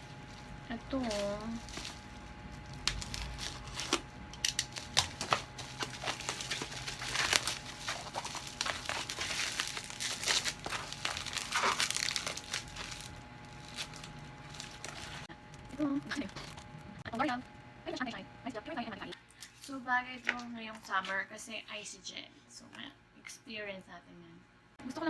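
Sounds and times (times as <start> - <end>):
plastic packaging crinkling: 0.0 - 17.5.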